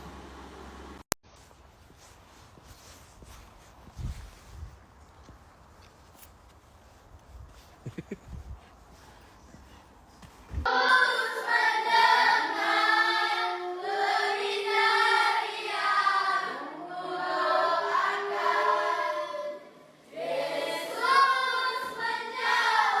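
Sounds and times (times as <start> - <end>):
choir singing long notes: 10.6 - 23.0.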